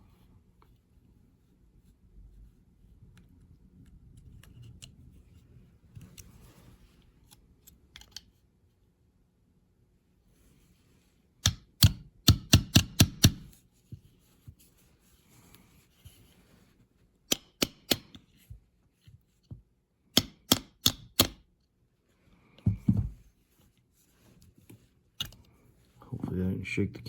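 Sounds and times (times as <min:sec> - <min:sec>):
hammer tapping on metal pin: 0:11.4 - 0:13.5, 0:20.2 - 0:21.4.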